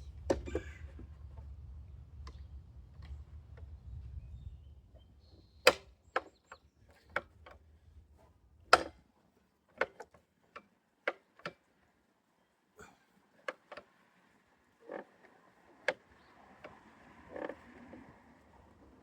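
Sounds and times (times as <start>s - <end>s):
tools and wooden parts clicking: 8.7s - 9.0s, 9.6s - 11.7s.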